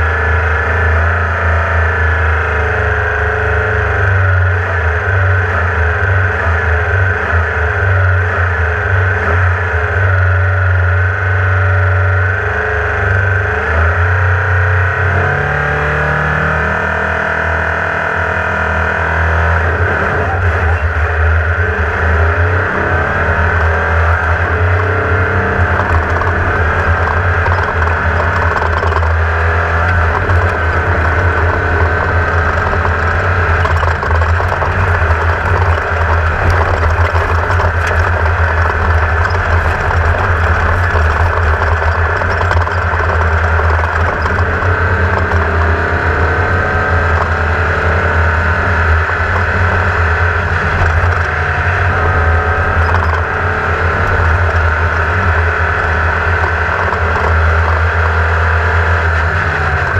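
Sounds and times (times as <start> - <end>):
race car engine revving: 0.0 - 59.9
deep rumble: 16.6 - 59.9.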